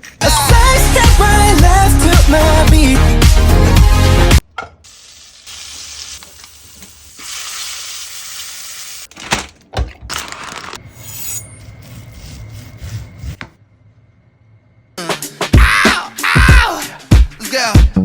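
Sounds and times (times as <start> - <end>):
pan sizzling: 4.8 - 9.1.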